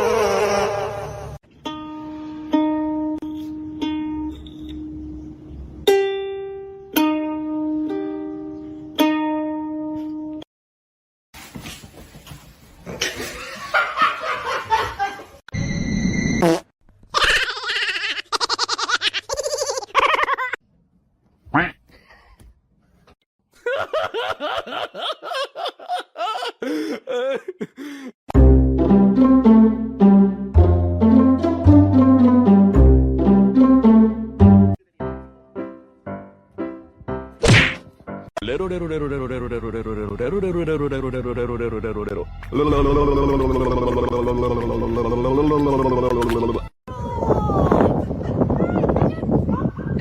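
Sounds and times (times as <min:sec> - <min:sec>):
slow plucked string notes: 0:01.6 - 0:05.2, 0:28.4 - 0:34.8
person laughing: 0:17.1 - 0:20.6, 0:23.6 - 0:28.2, 0:42.6 - 0:46.3.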